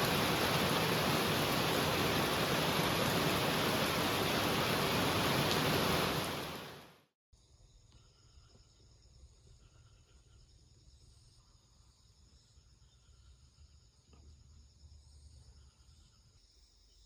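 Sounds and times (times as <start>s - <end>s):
insects chirping: 0.0s - 6.8s, 7.4s - 17.0s
heavy rain: 0.0s - 6.9s.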